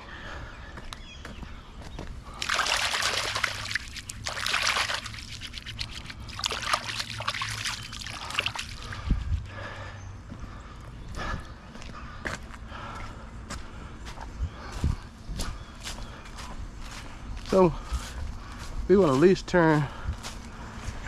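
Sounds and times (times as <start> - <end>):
water splashing and trickling: 2.2 - 9.4.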